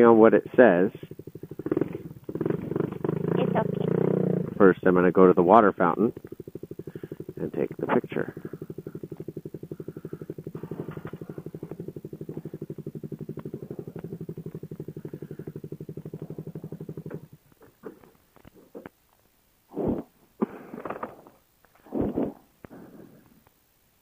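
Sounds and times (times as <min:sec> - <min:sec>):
motorcycle engine idling: 0:00.0 - 0:18.2
faint clicks: 0:06.1 - 0:07.0, 0:08.8 - 0:16.3.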